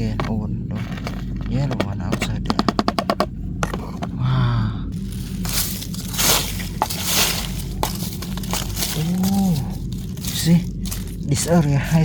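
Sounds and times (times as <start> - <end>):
hands scraping through soil: 5.0 - 11.7.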